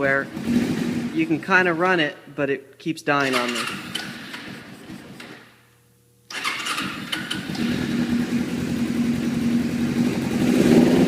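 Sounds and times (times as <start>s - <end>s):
motorcycle engine running: 0.0s - 1.7s, 3.2s - 5.5s, 6.3s - 11.0s.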